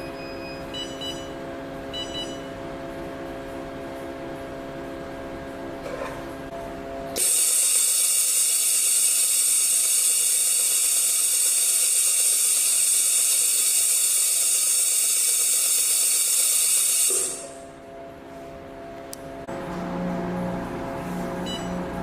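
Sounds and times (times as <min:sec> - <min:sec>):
loud steady hiss with high whine: 0:07.2 - 0:17.6.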